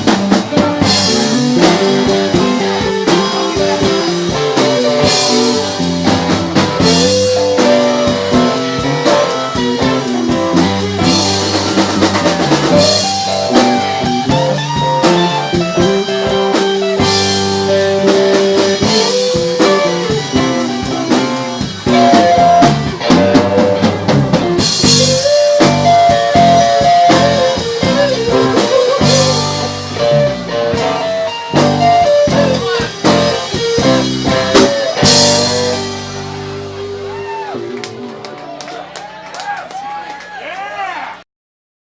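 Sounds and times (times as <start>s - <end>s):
guitar lines: 0.0s - 38.8s
drum kit: 0.0s - 39.6s.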